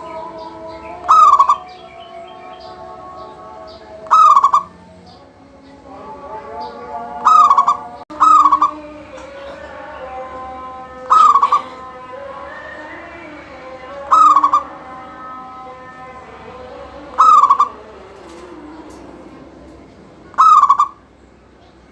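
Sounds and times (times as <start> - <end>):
dove cooing with trills: 0.9 - 1.8, 4.0 - 4.8, 7.2 - 9.6, 11.0 - 11.9, 14.0 - 14.8, 17.1 - 19.7, 20.3 - 21.0.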